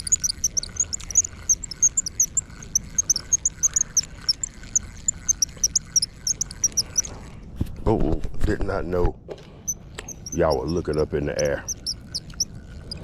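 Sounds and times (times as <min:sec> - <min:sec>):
high chirps from small animals: 0:00.0 - 0:07.1, 0:10.0 - 0:13.0.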